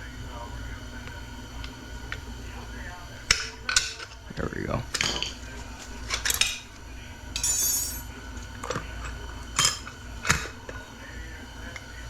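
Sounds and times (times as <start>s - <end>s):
metal parts clinking: 7.4s - 8.1s
metallic ring: 7.4s - 8.1s.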